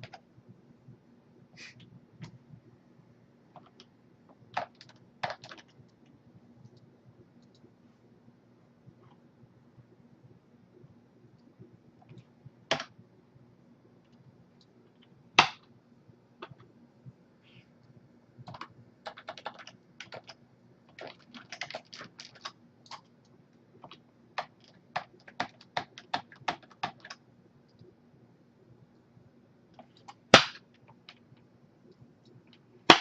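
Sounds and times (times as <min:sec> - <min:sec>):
typing on computer keyboard: 0:00.0 - 0:00.2, 0:03.5 - 0:07.6, 0:12.0 - 0:12.9, 0:18.4 - 0:27.9.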